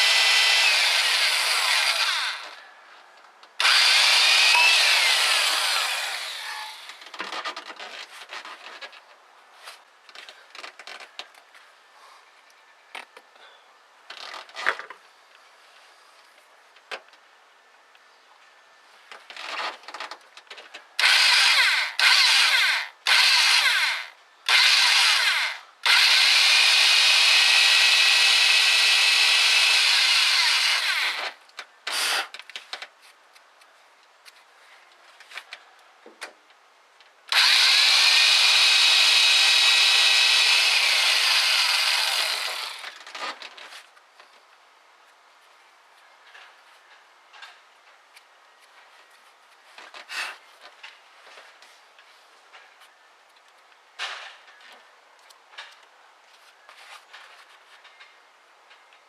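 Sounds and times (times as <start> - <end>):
electric drill boring metal: 0.0 - 2.6, 3.6 - 6.9, 21.0 - 31.4, 37.3 - 43.0.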